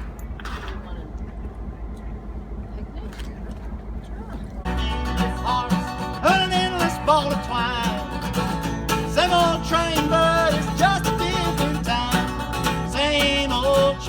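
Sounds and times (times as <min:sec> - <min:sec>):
country song with plucked strings: 0:04.7 - 0:14.0.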